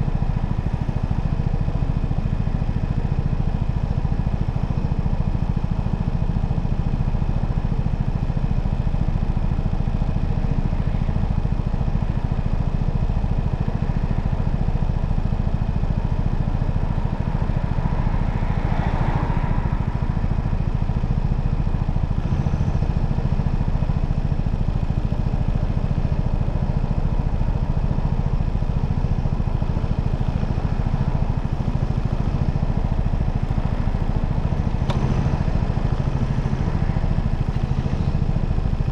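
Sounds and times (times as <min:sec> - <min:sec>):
motorcycle engine rumbling: 0:00.0 - 0:38.9.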